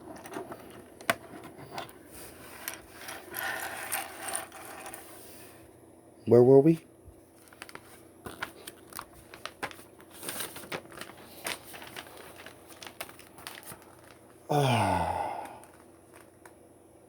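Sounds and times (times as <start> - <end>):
plastic bag crinkling: 7.4 - 14.5.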